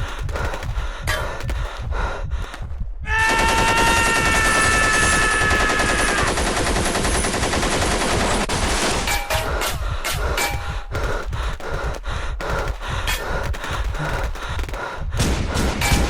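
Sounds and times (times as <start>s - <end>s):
rapid machine-gun fire: 0.0s - 1.8s, 3.2s - 9.4s, 10.8s - 16.0s
sharp gunshots: 3.2s - 9.4s, 13.5s - 16.0s.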